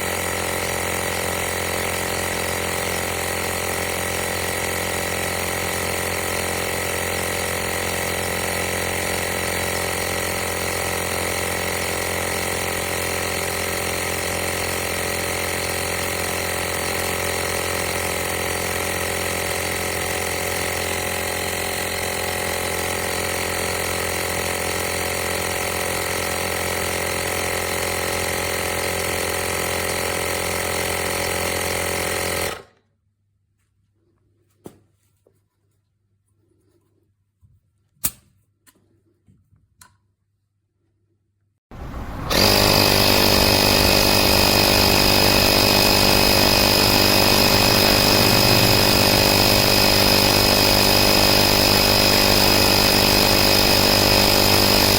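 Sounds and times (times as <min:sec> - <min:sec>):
air compressor running: 0:00.0 - 0:32.7, 0:41.7 - 0:54.9.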